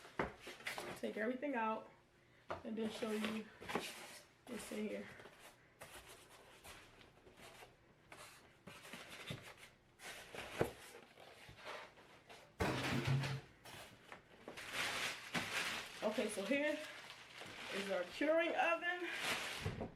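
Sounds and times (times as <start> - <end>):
packaging rustling: 13.7 - 19.9.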